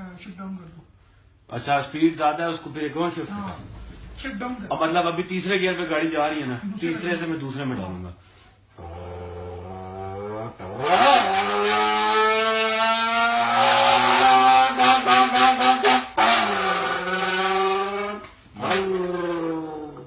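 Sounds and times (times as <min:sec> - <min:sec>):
mouth-made race car engine: 0:10.4 - 0:18.9.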